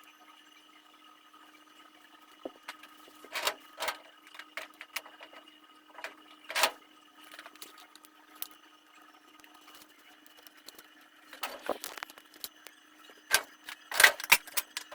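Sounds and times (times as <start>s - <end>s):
faint electrical hum: 0.0s - 14.9s.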